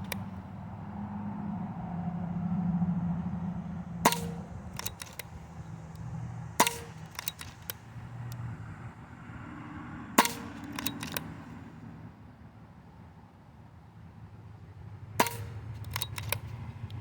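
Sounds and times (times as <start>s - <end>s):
air rifle shots: 0.0s - 0.5s, 4.0s - 8.6s, 10.0s - 11.7s, 15.2s - 17.0s
steady low hum: 0.0s - 12.1s
light clicks: 4.1s - 8.4s, 10.2s - 11.5s, 15.2s - 17.0s.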